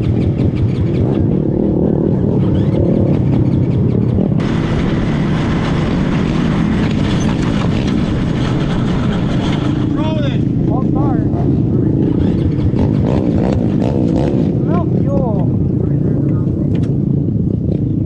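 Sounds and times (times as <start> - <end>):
racing kart engines: 0.0 - 18.0.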